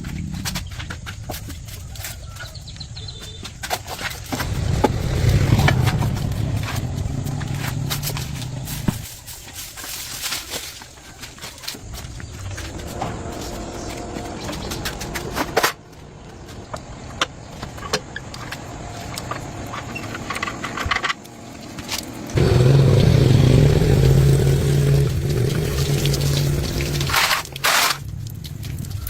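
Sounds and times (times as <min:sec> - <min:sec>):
motor droning: 0:22.4 - 0:27.6.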